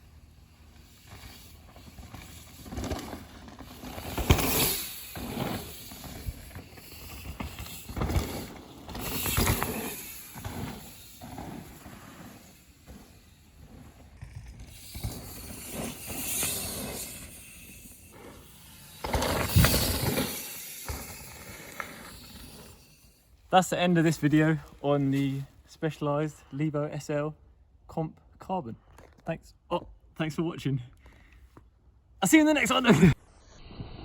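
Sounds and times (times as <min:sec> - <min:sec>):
bike chain rattling: 0:00.0 - 0:23.3
tyres on dirt: 0:00.0 - 0:25.5.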